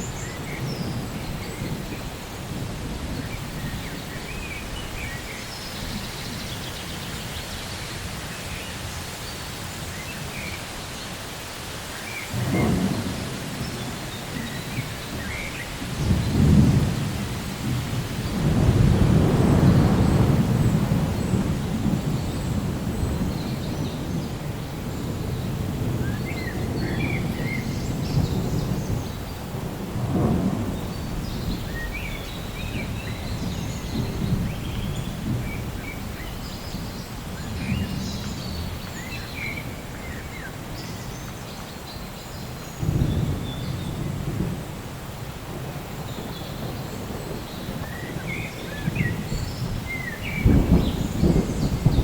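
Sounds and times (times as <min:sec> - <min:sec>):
steady rain: 0:00.0 - 0:52.0
rolling thunder: 0:12.3 - 0:40.4, 0:42.8 - 0:52.0.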